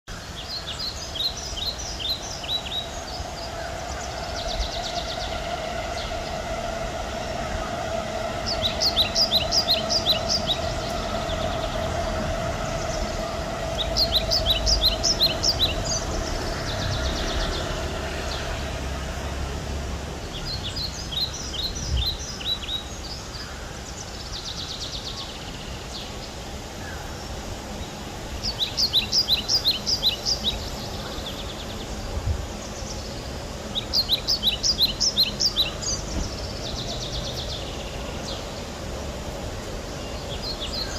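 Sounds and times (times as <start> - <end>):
songbird chirping: 0.1 - 40.9.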